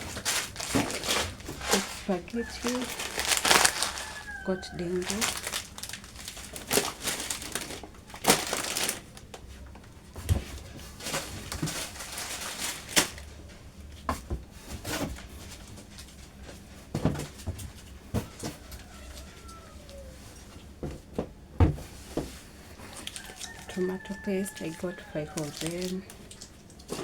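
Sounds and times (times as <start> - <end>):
items knocking and tapping: 0.0 - 4.4, 14.0 - 15.9, 16.5 - 18.9, 20.5 - 23.6
plastic packaging crinkling: 0.0 - 9.6, 10.9 - 13.4, 22.8 - 27.0.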